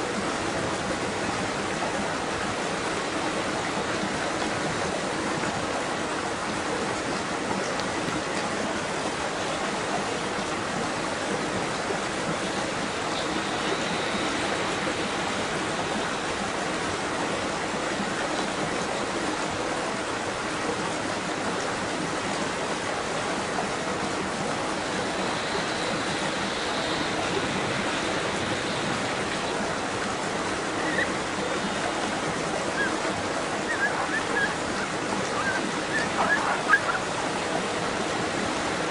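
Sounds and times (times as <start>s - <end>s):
flowing water rushing: 0.0s - 38.9s
faint bird chirps: 33.6s - 37.0s.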